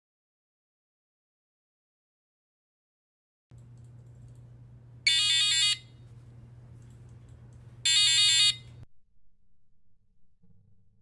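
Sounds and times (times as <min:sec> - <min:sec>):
buzzer electronic alarm tone: 0:05.1 - 0:06.0, 0:07.8 - 0:08.8.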